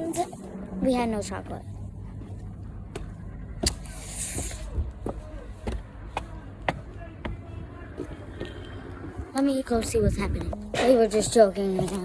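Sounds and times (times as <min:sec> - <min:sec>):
footsteps walking: 0:00.0 - 0:08.8
steady low rumble: 0:00.0 - 0:12.0
short hiss: 0:03.9 - 0:04.7.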